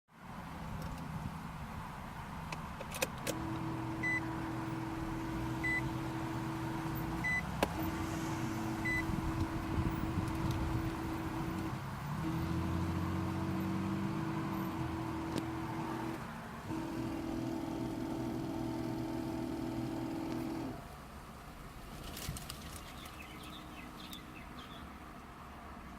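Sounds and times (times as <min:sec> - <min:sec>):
car engine idling: 0:03.3 - 0:21.8
short electronic beeps: 0:08.8 - 0:09.1.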